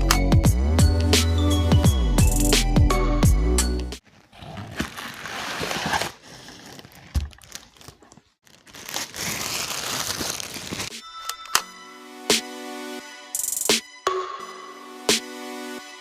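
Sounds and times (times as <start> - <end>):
packaging crinkling and tearing: 4.1 - 10.9.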